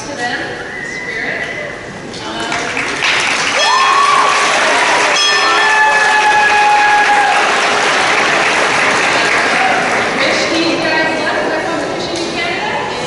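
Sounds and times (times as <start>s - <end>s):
crowd applause: 2.5s - 10.9s
crowd calls and whoops: 3.4s - 10.2s.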